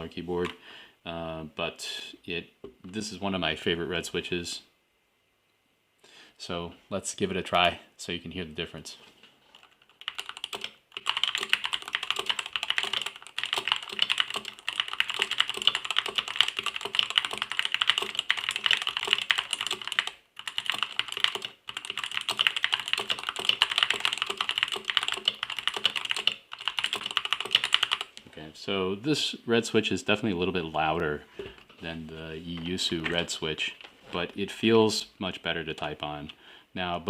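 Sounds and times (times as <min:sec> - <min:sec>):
mechanical keyboard typing: 0:09.5 - 0:28.2.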